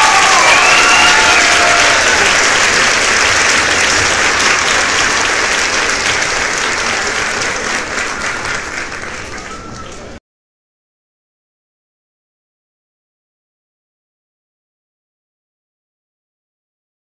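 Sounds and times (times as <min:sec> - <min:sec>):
crowd applause: 0:00.0 - 0:10.2.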